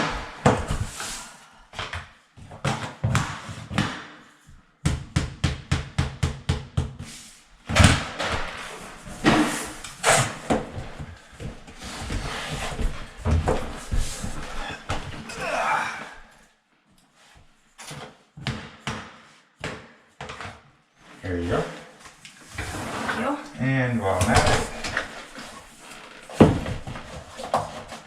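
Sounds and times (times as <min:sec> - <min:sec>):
heavy thuds and scuffs: 0:07.7 - 0:15.3.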